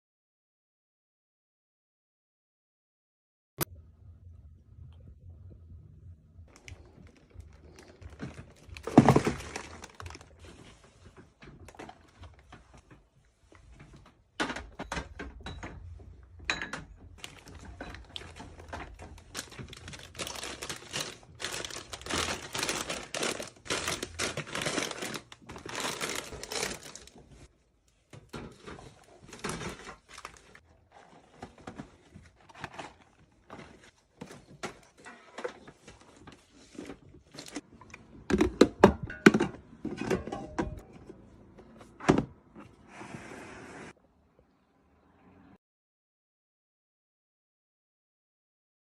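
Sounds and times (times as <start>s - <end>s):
plastic snack packets crinkling: 6.5s - 10.7s, 17.2s - 27.5s, 28.6s - 33.9s
items knocking on shelves: 8.1s - 10.2s.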